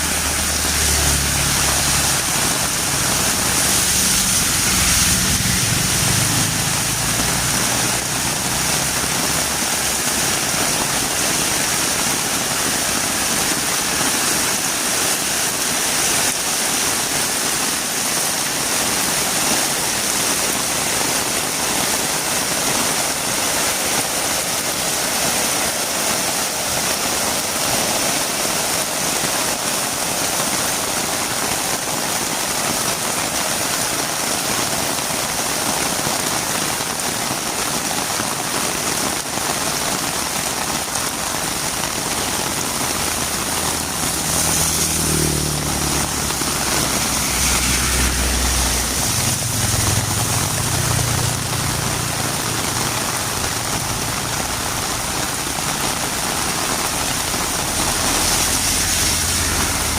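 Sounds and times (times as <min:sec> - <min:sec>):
vehicle engine hum: 0:00.0 - 0:10.2, 0:41.8 - 0:59.9
heavy rain on a road: 0:00.0 - 0:59.9.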